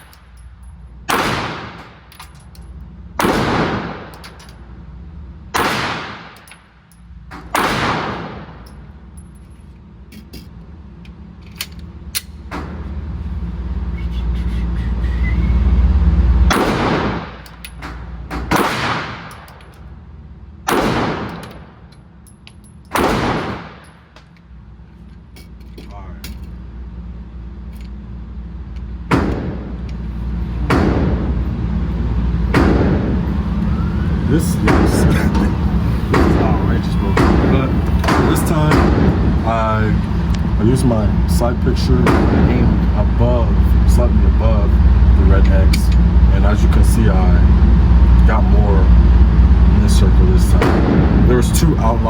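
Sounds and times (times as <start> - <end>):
low rumble: 0.0 - 52.0
pistol shots ringing: 1.1 - 2.1, 3.2 - 4.4, 5.6 - 6.6, 7.5 - 8.7, 16.5 - 19.6, 20.7 - 21.8, 22.9 - 24.1, 36.1 - 39.2.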